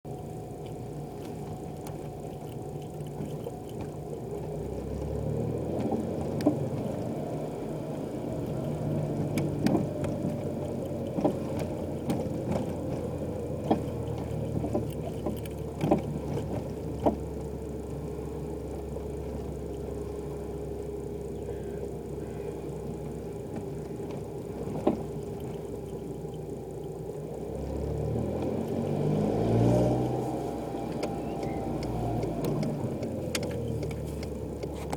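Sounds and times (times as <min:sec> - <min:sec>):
car engine and road noise: 0:00.0 - 0:34.9
suspension knocking and rattling: 0:00.1 - 0:34.9.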